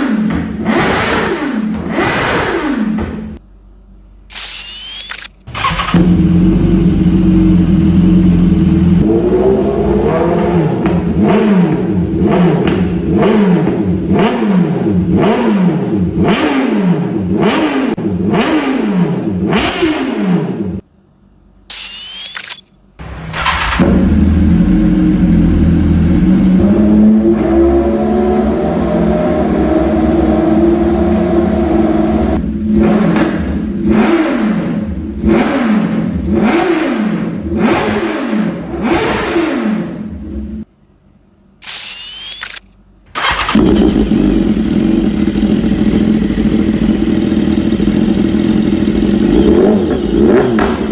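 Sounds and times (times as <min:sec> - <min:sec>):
motorcycle engine revving: 0:00.0 - 0:03.4, 0:05.1 - 0:20.8, 0:22.4 - 0:40.6, 0:43.2 - 0:50.9.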